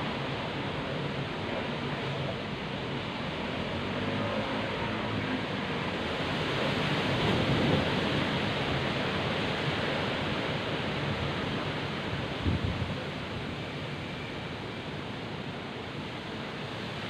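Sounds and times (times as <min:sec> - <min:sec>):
heavy rain pouring: 0:00.0 - 0:17.0
strong wind: 0:00.0 - 0:17.0
wind buffeting microphone: 0:11.8 - 0:13.3.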